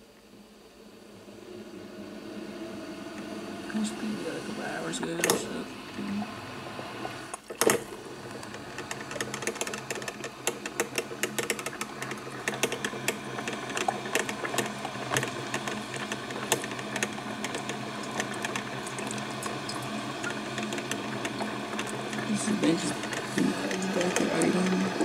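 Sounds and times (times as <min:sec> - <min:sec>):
steady low hum: 0:00.0 - 0:25.0
coffee maker popping and sputtering: 0:05.1 - 0:25.0.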